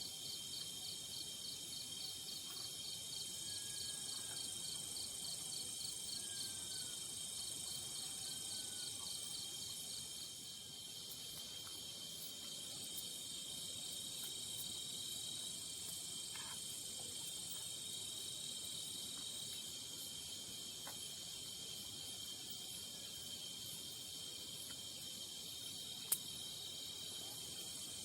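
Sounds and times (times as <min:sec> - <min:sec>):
insects trilling: 0:00.0 - 0:28.0
faint ticks: 0:25.9 - 0:26.4.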